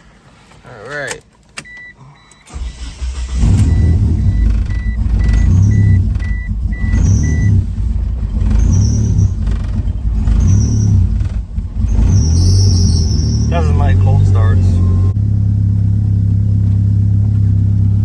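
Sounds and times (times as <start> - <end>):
car engine cranking and starting: 0.9 - 18.0
dashboard warning chime beeping: 1.6 - 7.9, 13.5 - 15.2
car engine running loudly: 3.3 - 18.0.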